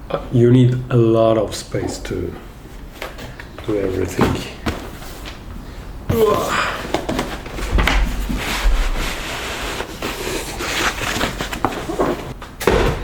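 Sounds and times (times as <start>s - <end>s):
cardboard boxes rustling and scraping: 6.1s - 12.4s.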